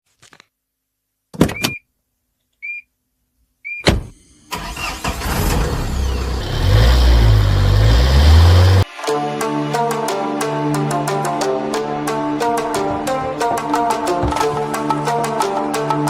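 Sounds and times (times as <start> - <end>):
car engine starting and running: 3.9 - 8.8.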